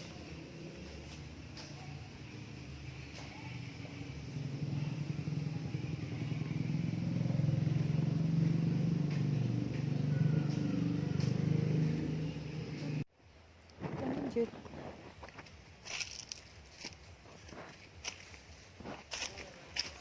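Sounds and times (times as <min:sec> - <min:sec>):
vehicle engine passing: 0:00.0 - 0:13.1.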